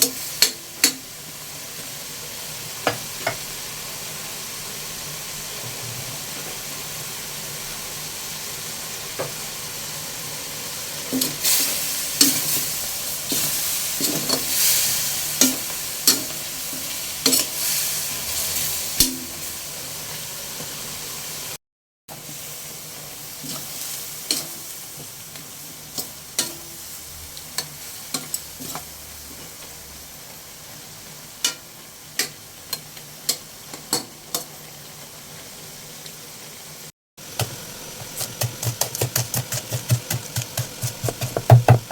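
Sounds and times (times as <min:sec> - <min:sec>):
food sizzling in a pan: 0:00.0 - 0:41.9
utensil clicking against pan: 0:37.4 - 0:41.9.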